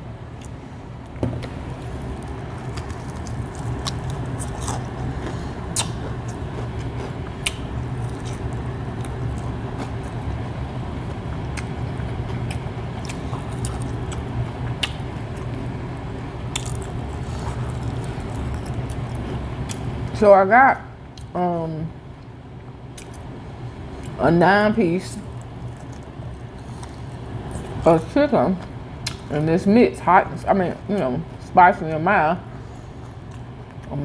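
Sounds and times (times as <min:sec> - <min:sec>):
low steady hum: 0:00.0 - 0:34.0
person chewing crispy chicken: 0:01.5 - 0:20.0, 0:25.2 - 0:27.9, 0:32.4 - 0:33.9.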